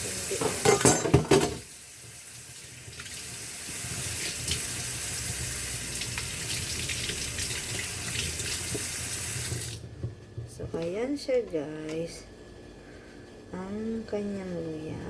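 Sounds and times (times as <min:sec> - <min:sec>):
tap water running into sink: 0:00.0 - 0:09.8.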